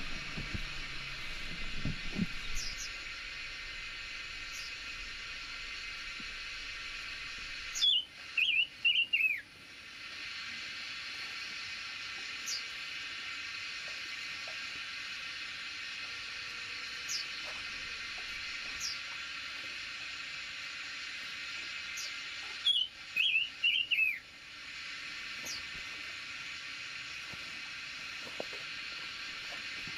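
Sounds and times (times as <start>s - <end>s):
songbird singing: 0.0s - 9.5s, 21.9s - 24.3s
steady hiss: 0.0s - 29.9s
faint bird chirps: 1.4s - 3.6s, 6.6s - 9.5s, 21.8s - 24.3s.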